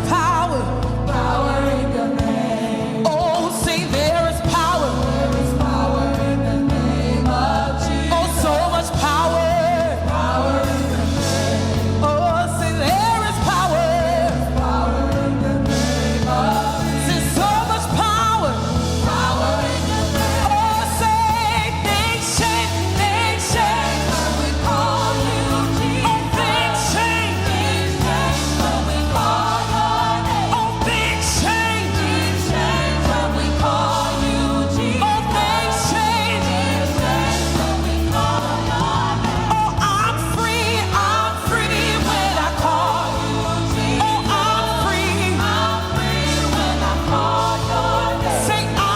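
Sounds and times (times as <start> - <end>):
band accompaniment: 0.0 - 48.9
bass line: 0.0 - 48.9
group singing praise song: 0.0 - 48.9.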